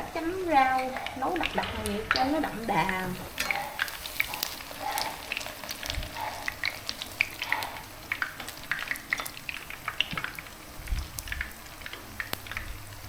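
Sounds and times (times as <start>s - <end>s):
stew bubbling in a pot: 0.0s - 13.0s.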